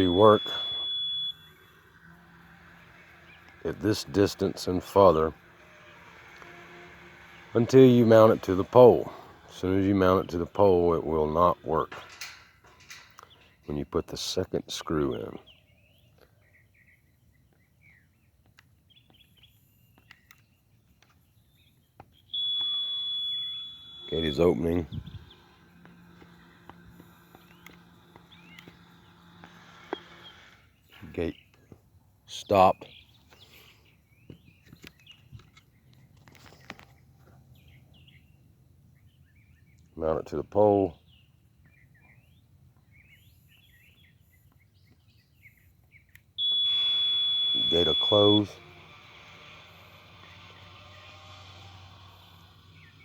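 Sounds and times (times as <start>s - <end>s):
high-pitched gate opener beep: 0.0s - 9.5s, 22.3s - 30.7s, 46.4s - 51.6s
birds chirping: 0.0s - 53.0s
faint bird chirps: 41.0s - 48.4s.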